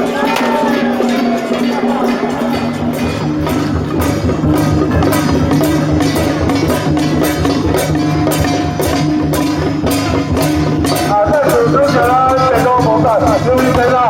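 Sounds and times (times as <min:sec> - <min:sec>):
wavering sliding melody: 0:00.0 - 0:09.5
percussion strikes: 0:00.0 - 0:14.0.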